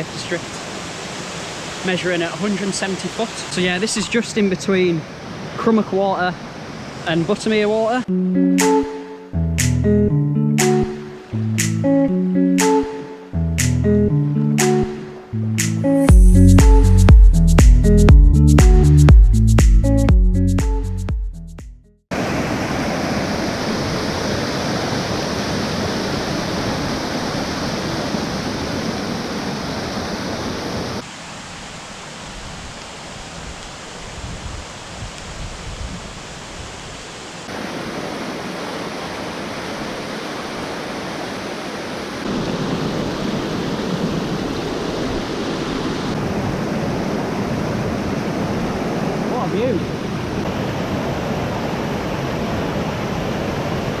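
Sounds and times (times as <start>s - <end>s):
music: 8.1s - 22.0s
waterfall rushing: 22.1s - 34.0s, 37.2s - 54.0s.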